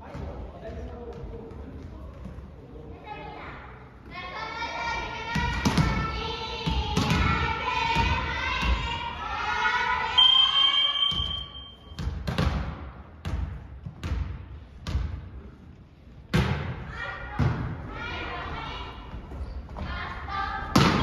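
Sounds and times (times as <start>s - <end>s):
referee whistle blown: 10.1s - 11.9s.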